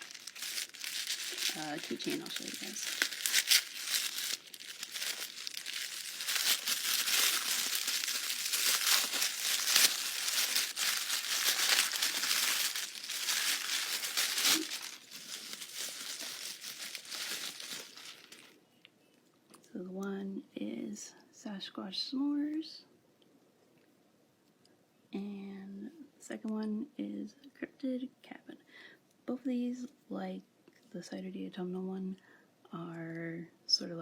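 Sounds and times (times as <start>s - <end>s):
packaging crinkling and rustling: 0.0s - 18.6s.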